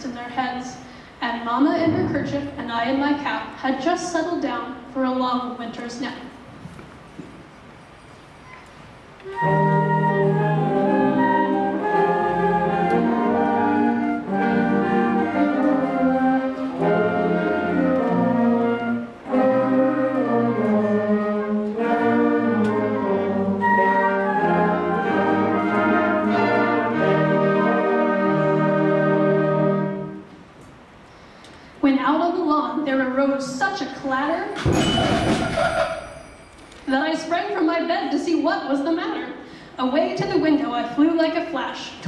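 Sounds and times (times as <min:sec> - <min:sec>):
short breaths: 0:00.8 - 0:01.2, 0:31.0 - 0:31.8, 0:39.4 - 0:39.8
school concert band playing: 0:01.7 - 0:03.6, 0:09.2 - 0:30.3, 0:34.5 - 0:36.7.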